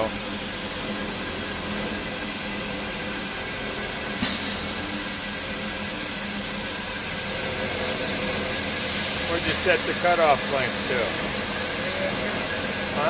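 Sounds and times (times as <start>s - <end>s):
bandsaw running: 7.2s - 13.0s.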